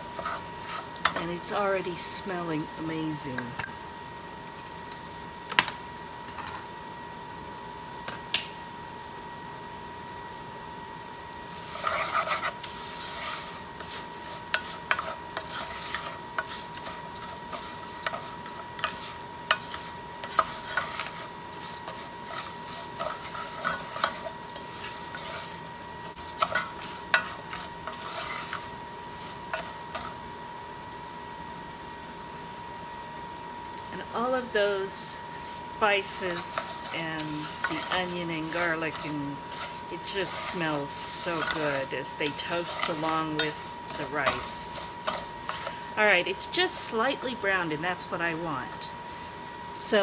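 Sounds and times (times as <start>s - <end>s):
spoon stirring rice in a pan: 0.0s - 1.2s, 11.5s - 30.4s, 36.0s - 45.9s
light sizzle: 0.0s - 50.0s.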